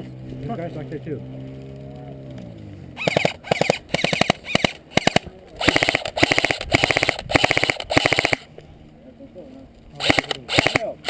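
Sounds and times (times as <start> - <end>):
airsoft rifle firing bursts: 3.0 - 8.5, 10.0 - 11.0.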